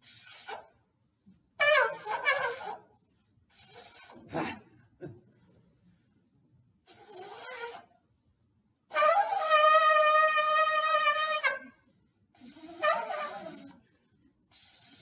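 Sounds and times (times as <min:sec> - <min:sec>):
shofar blasts: 0:08.9 - 0:11.8, 0:12.7 - 0:13.7.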